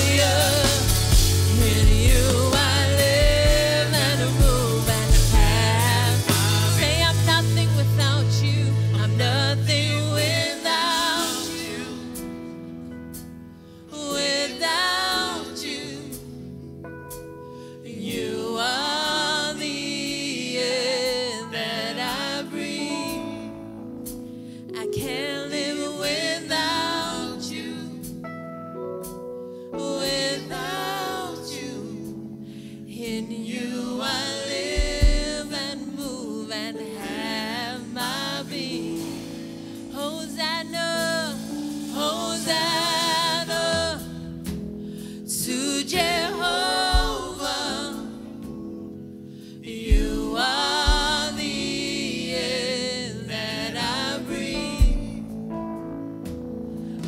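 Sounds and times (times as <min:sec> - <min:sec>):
person singing with vibrato: 0:00.0 - 0:12.6, 0:13.7 - 0:16.5, 0:17.5 - 0:28.2, 0:29.6 - 0:44.5, 0:45.1 - 0:48.6, 0:49.4 - 0:55.4
sustained keyboard chords: 0:00.0 - 0:13.6.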